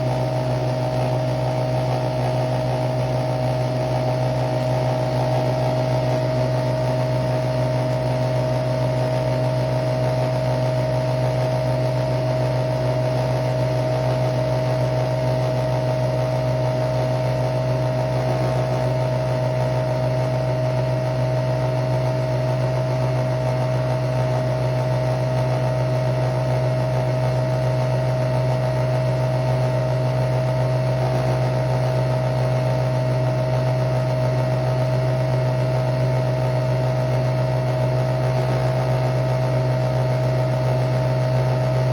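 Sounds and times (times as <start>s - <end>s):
coffee machine motor humming: 0.0s - 41.9s
constant whine: 14.5s - 41.9s.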